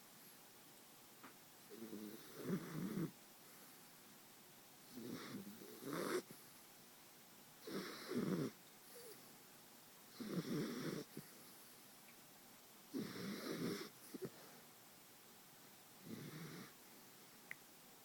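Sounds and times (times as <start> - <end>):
dog snoring: 1.7 - 3.2, 4.9 - 6.4, 7.6 - 9.2, 10.1 - 11.3, 12.9 - 14.4, 16.0 - 16.8.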